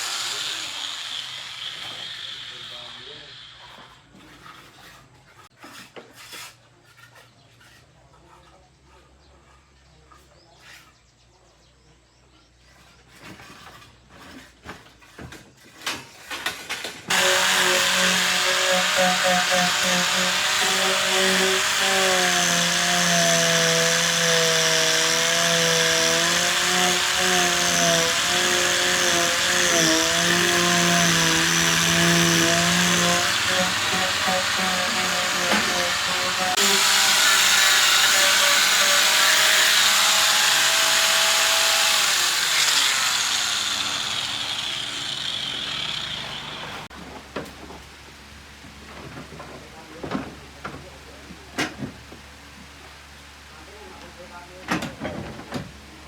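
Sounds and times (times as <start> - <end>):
power tool whining: 0.0 - 3.7, 17.1 - 46.9.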